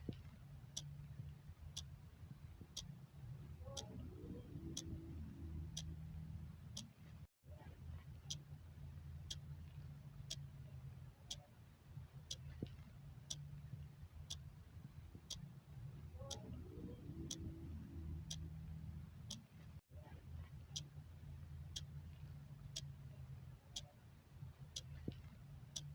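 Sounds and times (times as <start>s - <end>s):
low background hum: 0.0s - 25.9s
clock ticking: 4.7s - 5.0s, 17.3s - 18.5s.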